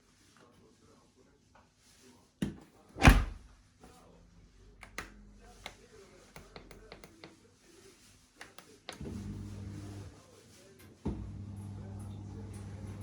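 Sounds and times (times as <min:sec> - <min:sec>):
light clicks and taps: 0:04.8 - 0:07.4, 0:08.4 - 0:09.0.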